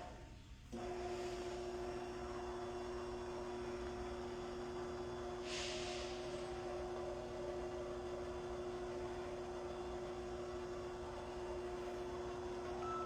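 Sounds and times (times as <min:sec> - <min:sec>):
brief soft hiss: 0:05.4 - 0:06.2.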